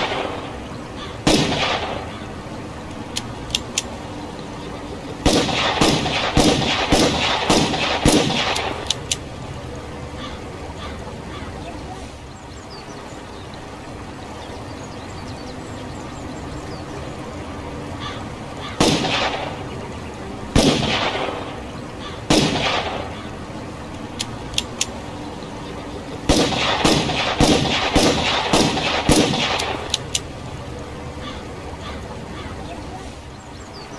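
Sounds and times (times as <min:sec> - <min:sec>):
revolver gunshots: 0:00.0 - 0:02.4, 0:05.2 - 0:09.2, 0:18.7 - 0:19.8, 0:20.5 - 0:23.8, 0:26.2 - 0:30.3
background hiss: 0:00.0 - 0:33.9
light clicks: 0:02.8 - 0:04.2, 0:08.1 - 0:09.5, 0:23.9 - 0:25.0, 0:29.1 - 0:30.5.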